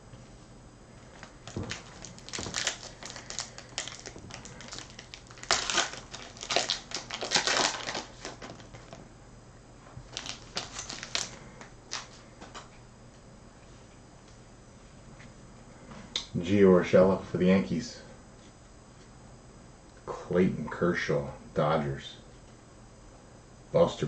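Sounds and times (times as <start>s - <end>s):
foil wrapper crinkling: 1.1s - 9.0s, 10.0s - 12.2s.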